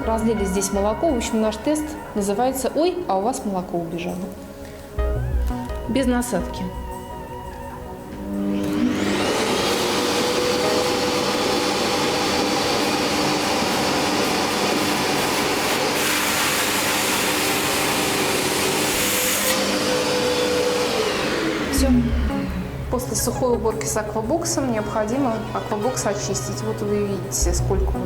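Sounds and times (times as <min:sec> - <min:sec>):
vacuum cleaner motor: 0:08.2 - 0:22.6.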